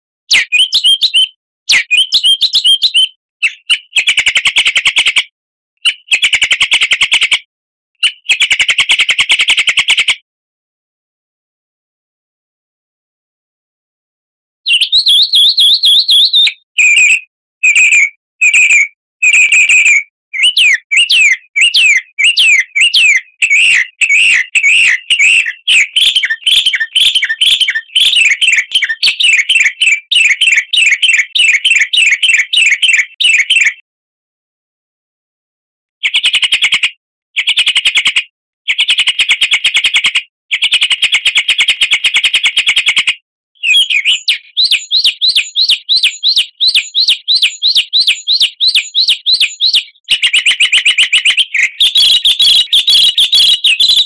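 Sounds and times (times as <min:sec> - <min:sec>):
songbird chirps and trills: 0:14.7 - 0:33.7, 0:43.6 - 0:54.0.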